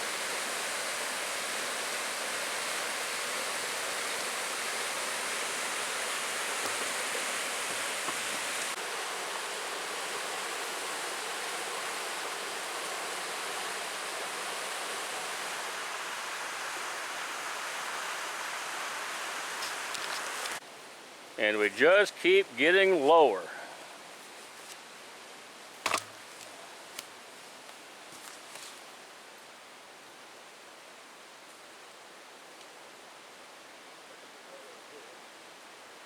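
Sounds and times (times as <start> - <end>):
stream water rushing: 0.0 - 20.6.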